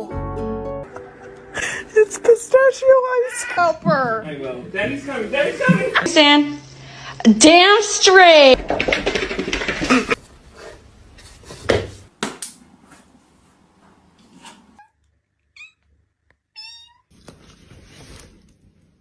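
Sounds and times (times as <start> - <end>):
cat meowing: 3.2 - 3.8, 15.6 - 15.8, 16.6 - 17.1.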